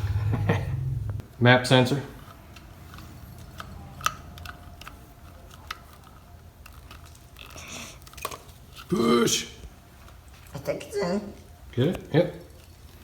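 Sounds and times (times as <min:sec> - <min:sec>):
low steady hum: 0:00.0 - 0:01.4.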